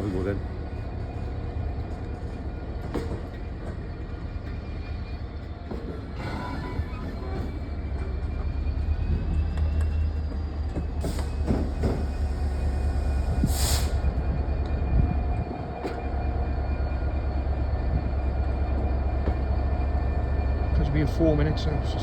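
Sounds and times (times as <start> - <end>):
freight train rumbling on rails: 0.0 - 22.0
wheel squeals: 2.1 - 13.2.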